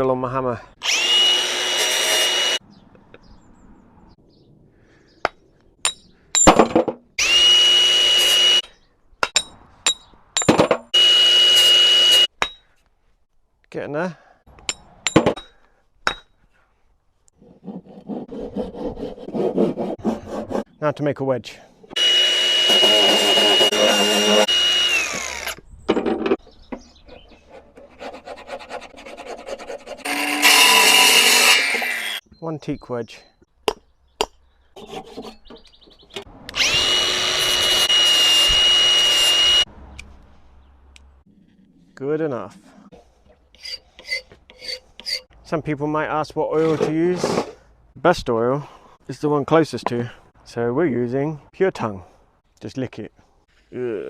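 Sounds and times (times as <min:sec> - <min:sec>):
power tool whining: 0:00.8 - 0:02.6, 0:07.2 - 0:08.6, 0:10.9 - 0:12.3, 0:21.9 - 0:25.6, 0:36.5 - 0:39.7
rasping strokes on wood: 0:17.4 - 0:20.7, 0:22.0 - 0:25.5, 0:27.0 - 0:32.0, 0:42.8 - 0:45.3.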